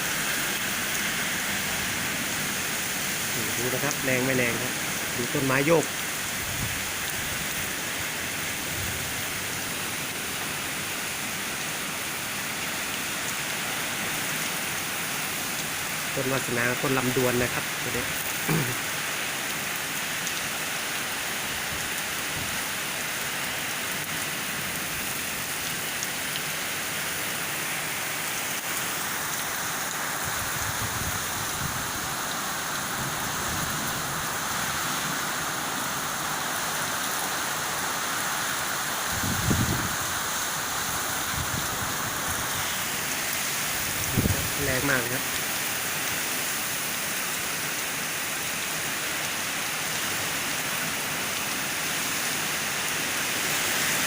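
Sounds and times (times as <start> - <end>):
heavy rain: 0.0 - 54.0
strong wind: 6.3 - 7.5, 30.2 - 32.1, 39.1 - 42.7, 43.8 - 44.7.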